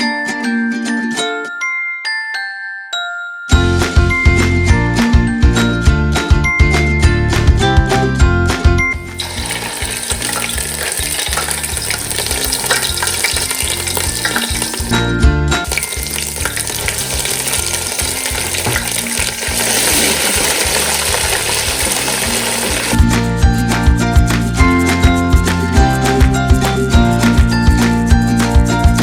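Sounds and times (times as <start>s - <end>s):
music: 0.0s - 29.0s
food sizzling in hot oil: 9.2s - 15.0s, 15.7s - 23.0s.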